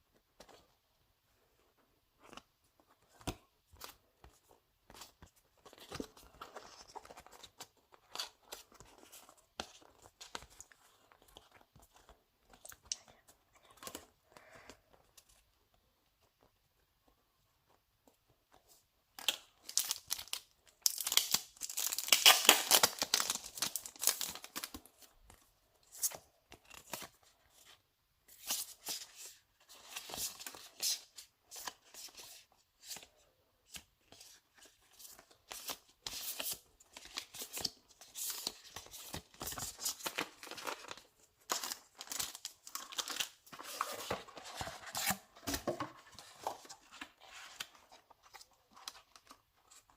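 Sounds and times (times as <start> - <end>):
packaging torn and crinkled: 19.2 - 24.7.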